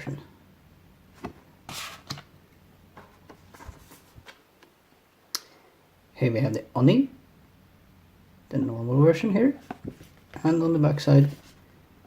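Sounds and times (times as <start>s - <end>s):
card sliding rustle: 1.7s - 2.3s, 3.0s - 4.4s.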